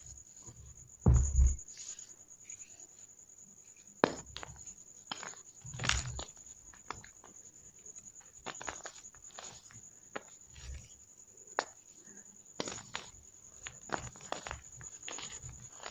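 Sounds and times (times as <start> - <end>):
chalk balls crunching: 12.6 - 15.9.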